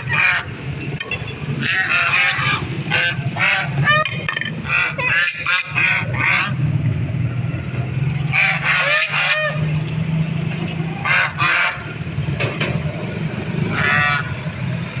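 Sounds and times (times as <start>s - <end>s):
ducks quacking: 0.0s - 0.7s, 1.5s - 6.8s, 8.2s - 9.8s, 10.8s - 12.0s, 13.6s - 14.7s.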